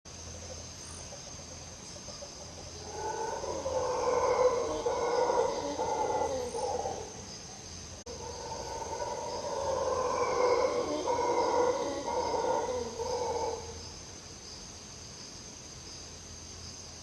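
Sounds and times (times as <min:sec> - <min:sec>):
animal long rough call: 0:02.8 - 0:07.3, 0:08.1 - 0:13.9.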